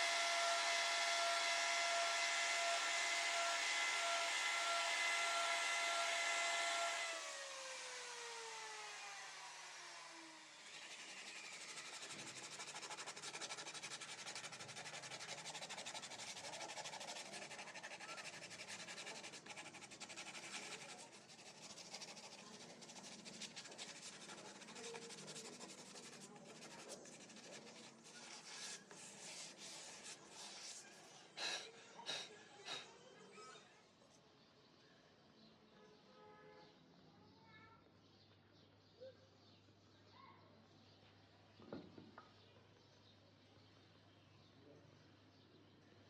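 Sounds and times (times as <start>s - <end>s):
router motor winding down: 0.0s - 12.7s
rubbing on wood: 11.3s - 32.2s.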